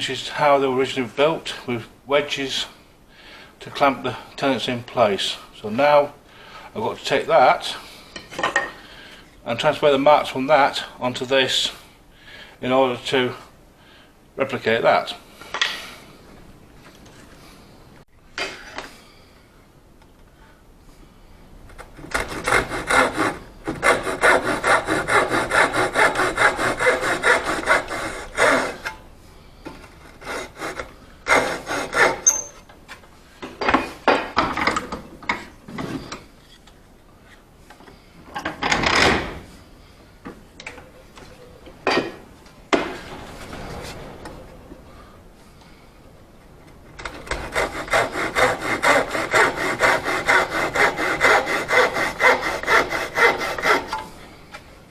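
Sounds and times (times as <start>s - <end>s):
hand saw cutting wood: 21.9s - 29.0s, 29.8s - 32.5s, 47.0s - 54.1s.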